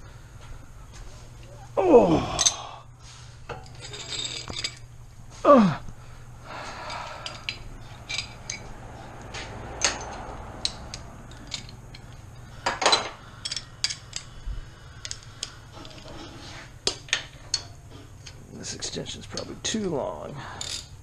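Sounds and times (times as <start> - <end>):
metal hand tools clinking: 2.4 - 2.7, 3.5 - 4.9, 6.8 - 8.7, 9.8 - 14.3.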